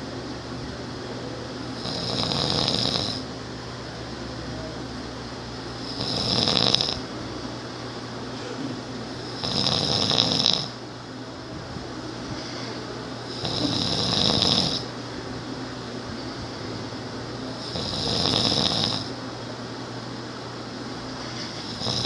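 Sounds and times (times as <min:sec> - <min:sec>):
person snoring: 0:01.8 - 0:03.3, 0:05.8 - 0:07.0, 0:09.2 - 0:10.8, 0:12.3 - 0:14.9, 0:17.6 - 0:19.1, 0:21.1 - 0:22.0.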